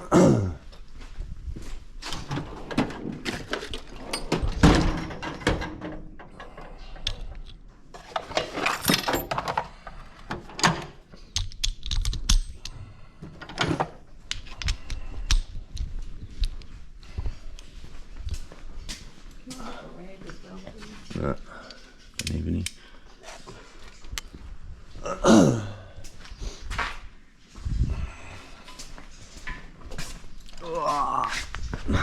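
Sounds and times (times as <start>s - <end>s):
metal tools clinking and rattling: 2.1s - 12.7s.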